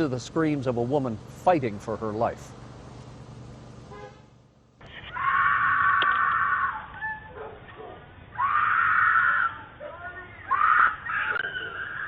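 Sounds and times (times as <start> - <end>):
woman screaming: 5.1 - 7.3, 8.4 - 9.7, 10.4 - 12.0.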